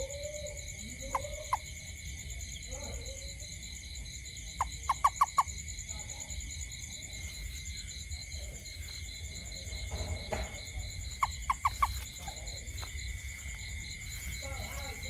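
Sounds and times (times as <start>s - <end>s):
night insects trilling: 0.0s - 15.0s
frog calling sharp notes: 4.6s - 5.6s, 11.0s - 12.9s.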